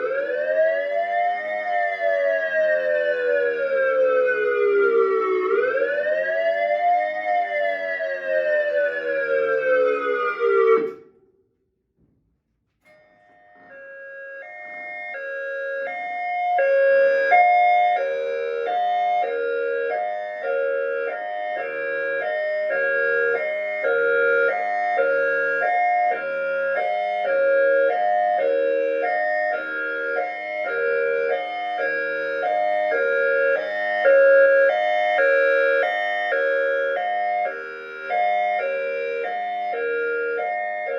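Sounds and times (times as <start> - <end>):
electronic siren falling wail: 0.0 - 11.1, 13.6 - 40.9
two-tone alternating siren: 0.0 - 11.2, 13.1 - 40.9.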